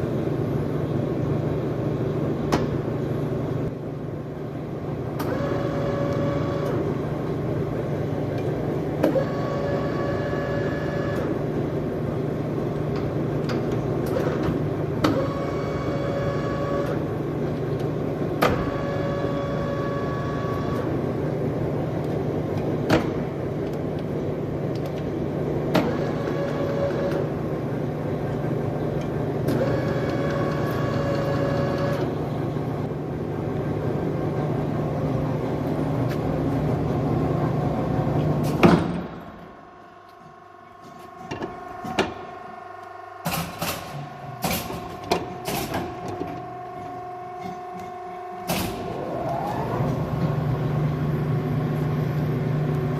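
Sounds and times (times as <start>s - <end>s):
pitched machine whine: 39.0s - 52.9s.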